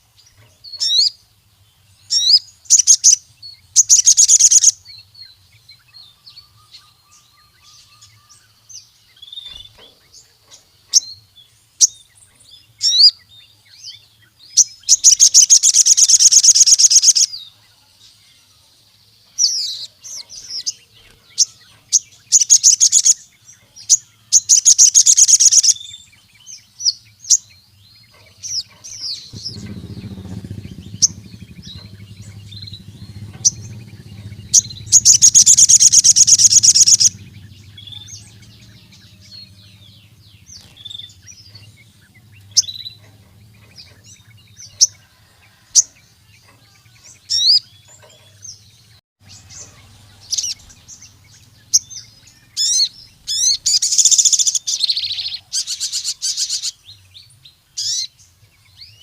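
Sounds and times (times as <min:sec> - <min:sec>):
bird chirping and trilling: 0:00.3 - 0:01.2, 0:01.8 - 0:59.0
low hum: 0:29.2 - 0:45.1.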